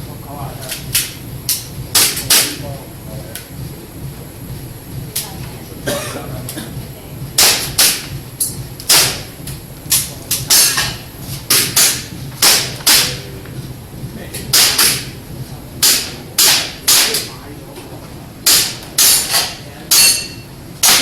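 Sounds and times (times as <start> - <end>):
airsoft pistol shots: 8.9 - 9.2.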